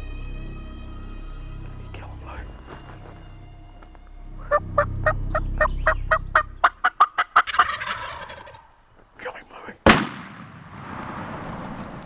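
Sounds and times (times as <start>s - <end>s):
turkeys gobbling: 2.6s - 8.8s.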